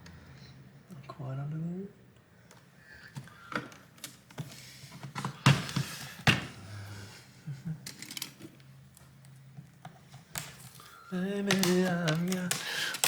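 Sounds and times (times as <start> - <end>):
clicks and knocks: 11.4 - 13.0.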